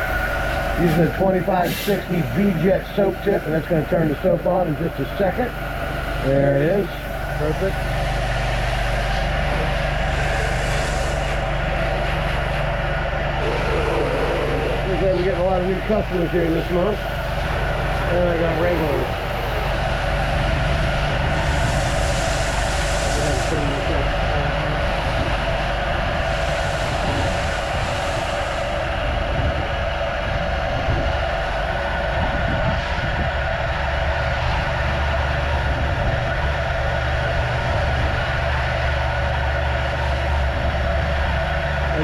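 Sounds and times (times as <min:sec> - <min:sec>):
pressure washer motor hum: 0:00.0 - 0:42.0
hiss of water spray: 0:00.3 - 0:02.6, 0:09.0 - 0:11.5, 0:21.3 - 0:24.2, 0:26.2 - 0:28.9.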